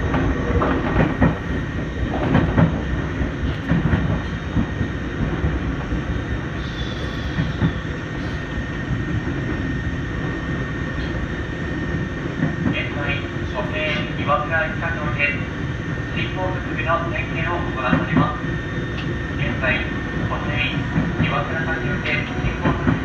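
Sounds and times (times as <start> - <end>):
train low rumble: 0.0 - 23.0.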